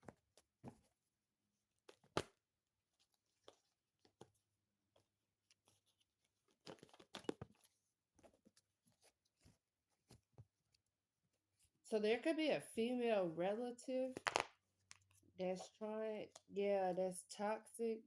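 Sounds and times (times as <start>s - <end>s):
cards rustling and flicking: 14.1s - 15.2s
card snapping: 14.2s - 14.5s.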